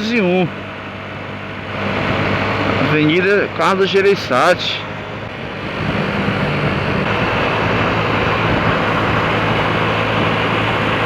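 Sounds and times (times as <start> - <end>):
motorcycle engine running: 4.9 - 11.0.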